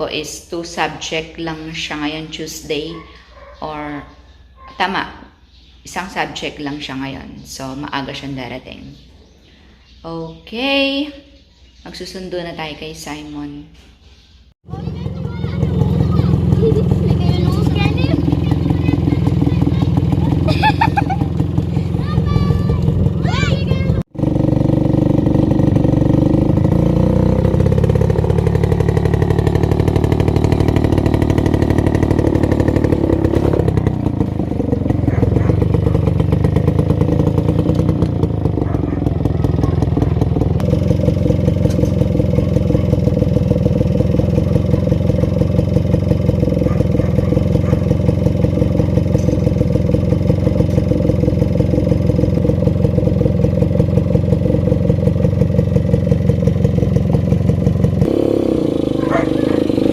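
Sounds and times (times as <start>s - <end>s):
small motorcycle engine running: 14.6s - 59.9s.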